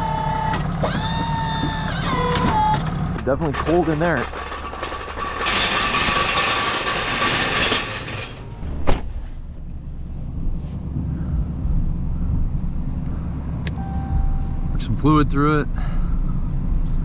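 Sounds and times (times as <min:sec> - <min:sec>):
truck engine idling: 0:00.0 - 0:17.0.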